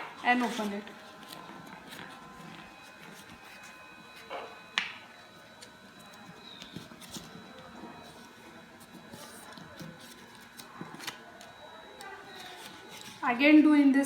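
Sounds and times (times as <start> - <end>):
paper rustling and crinkling: 0.0 - 13.4
sharp paper crackle: 5.6 - 13.4.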